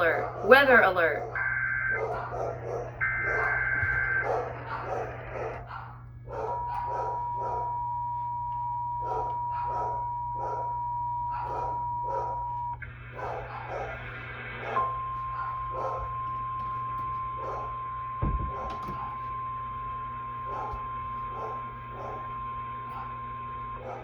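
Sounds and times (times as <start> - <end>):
dog barking: 0.0 - 7.8, 9.0 - 16.2, 17.4 - 17.8, 20.4 - 24.0
data burst tones: 3.0 - 5.5.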